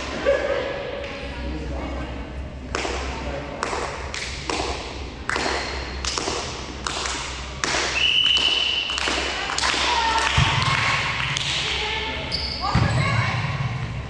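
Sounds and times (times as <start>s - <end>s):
referee's whistle: 8.0s - 8.9s.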